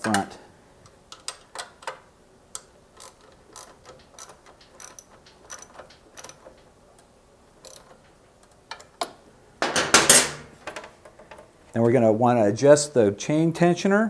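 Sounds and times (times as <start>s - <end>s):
socket ratchet clicking: 1.1s - 6.6s.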